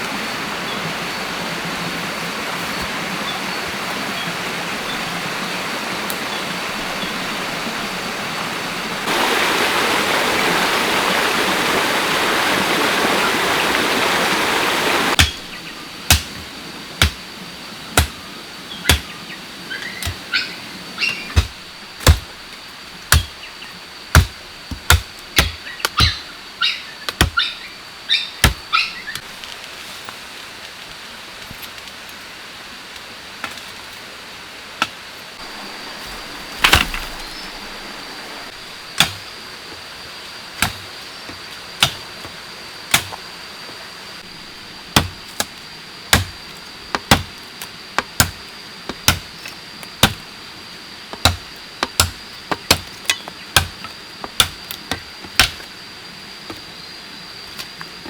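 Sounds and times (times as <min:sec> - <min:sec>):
blade chopping bamboo: 0:15.2 - 0:15.5, 0:16.1 - 0:16.4, 0:21.3 - 0:22.4, 0:23.1 - 0:23.4, 0:24.1 - 0:26.2, 0:27.1 - 0:27.4, 0:28.4 - 0:29.3, 0:36.6 - 0:37.2, 0:39.0 - 0:39.2, 0:40.6 - 0:40.9, 0:41.8 - 0:42.0, 0:42.9 - 0:43.2, 0:44.9 - 0:47.4, 0:48.0 - 0:49.4, 0:50.0 - 0:50.2, 0:51.1 - 0:55.7.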